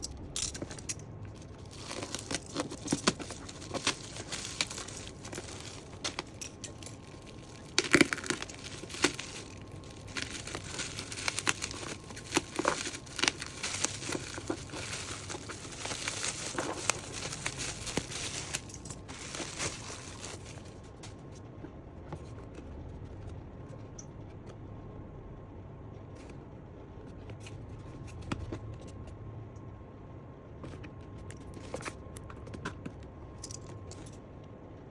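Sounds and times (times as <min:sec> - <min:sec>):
plastic and paper crinkling: 0:00.4 - 0:21.3.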